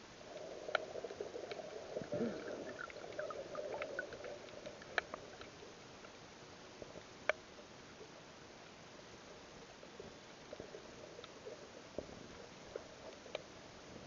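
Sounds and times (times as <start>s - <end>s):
muffled underwater sloshing: 0.1s - 6.3s.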